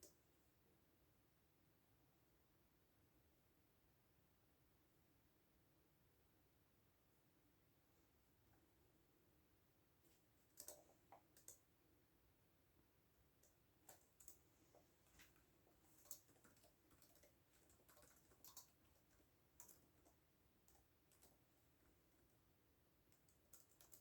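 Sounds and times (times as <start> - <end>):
computer keyboard keystrokes: 10.5 - 11.6, 13.4 - 14.4, 15.2 - 21.4, 23.1 - 24.0.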